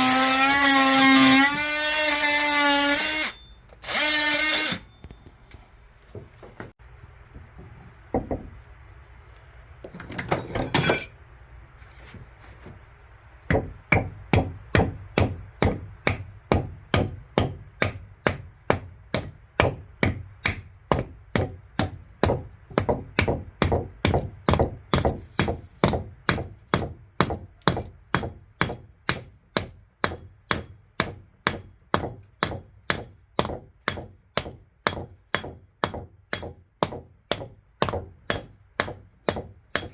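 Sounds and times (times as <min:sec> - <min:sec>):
hand hammering with ringing strikes: 0:04.5 - 0:05.4.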